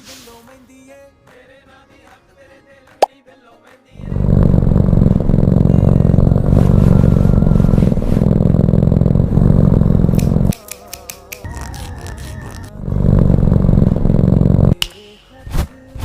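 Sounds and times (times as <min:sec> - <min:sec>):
loud electric motor running: 0:04.0 - 0:10.5, 0:12.6 - 0:14.8.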